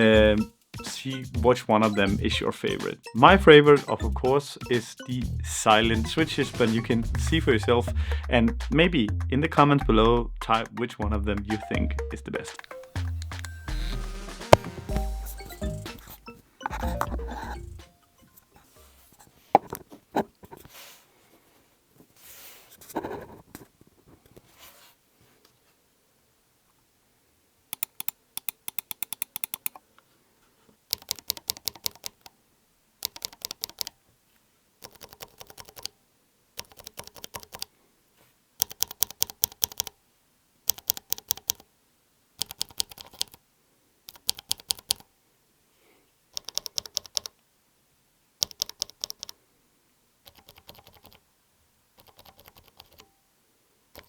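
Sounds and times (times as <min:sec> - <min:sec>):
keyboard switches clacking: 0:27.8 - 0:29.8.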